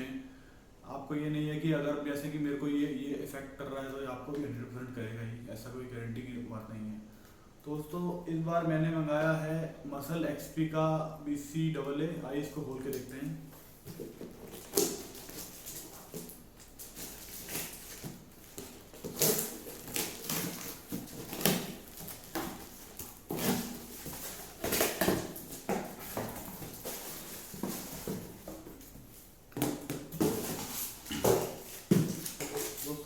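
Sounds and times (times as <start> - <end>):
packaging rustling and tearing: 13.8 - 33.0.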